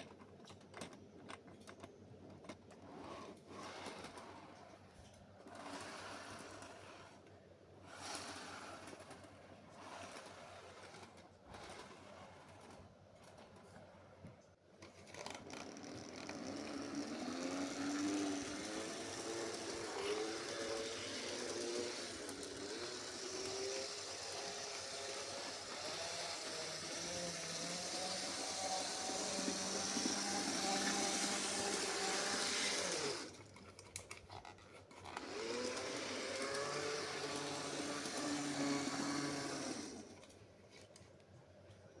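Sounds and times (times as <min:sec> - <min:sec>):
model train motor whine: 0:05.4 - 0:13.4, 0:15.2 - 0:33.4, 0:35.1 - 0:40.3.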